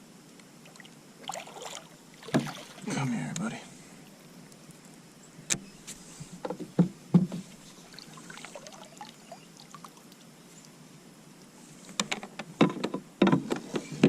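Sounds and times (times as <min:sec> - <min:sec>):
knocks on plastic kayak: 0:02.3 - 0:02.5, 0:06.5 - 0:07.4
faint rustling: 0:02.8 - 0:08.7, 0:10.1 - 0:12.6.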